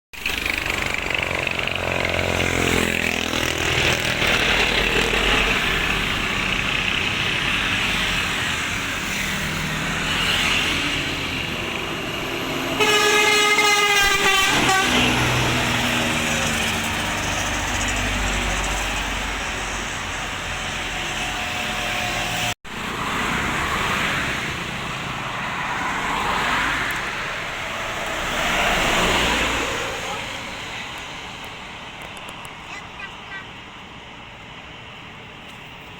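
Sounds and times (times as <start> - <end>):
traffic noise: 0.1 - 35.9
bus engine revving: 0.2 - 32.4
musical bus air horn: 12.8 - 15.5.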